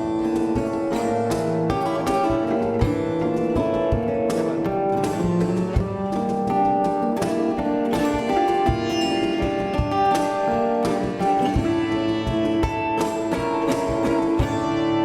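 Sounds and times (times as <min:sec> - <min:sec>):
guitar: 0:00.0 - 0:15.0
hand percussion beat: 0:00.0 - 0:15.0
sitar: 0:08.3 - 0:15.0.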